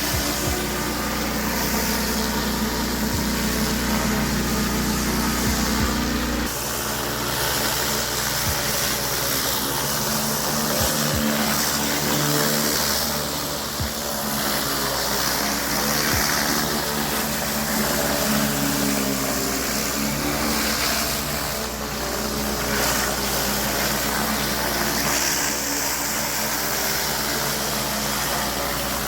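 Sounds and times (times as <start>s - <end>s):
high-pressure water spraying: 0.0s - 29.0s
pressure washer engine running: 0.0s - 29.0s.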